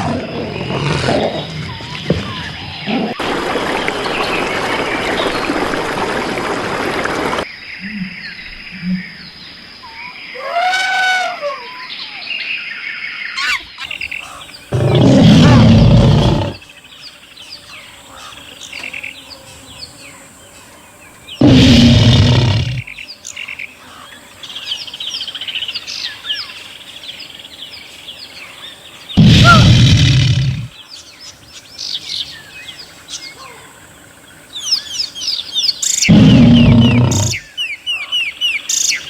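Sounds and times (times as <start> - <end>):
loud animal roar: 0.0 - 1.8, 14.7 - 16.6, 21.4 - 22.9, 29.2 - 30.7, 36.1 - 37.4
birds chirping: 11.7 - 39.0.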